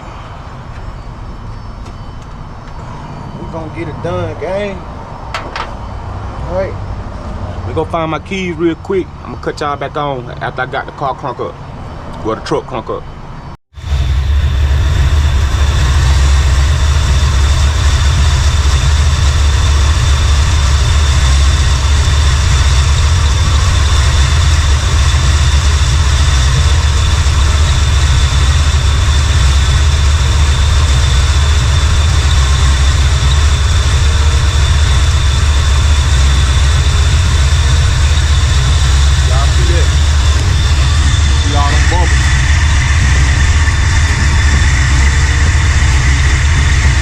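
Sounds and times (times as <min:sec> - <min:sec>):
pickup engine idling: 0:13.7 - 0:47.0
thin steady high tone: 0:13.9 - 0:47.0.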